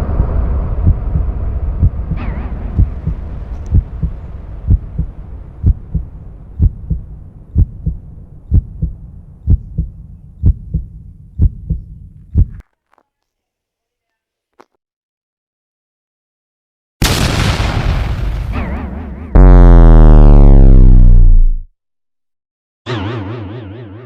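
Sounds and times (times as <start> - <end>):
heartbeat thumps: 0.2 - 12.6.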